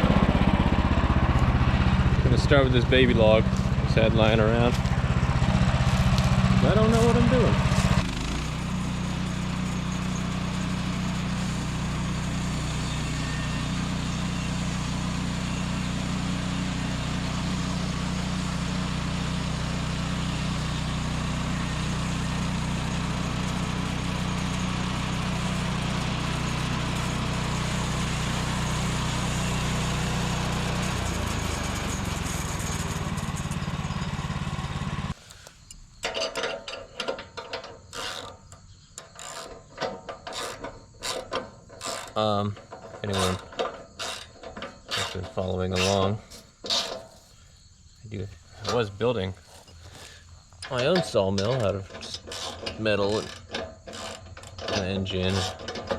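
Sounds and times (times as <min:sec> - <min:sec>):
sawmill engine running: 0:00.0 - 0:35.4, 0:39.0 - 0:47.3, 0:48.6 - 0:55.9
light mechanical clicks and rattles: 0:49.6 - 0:55.9.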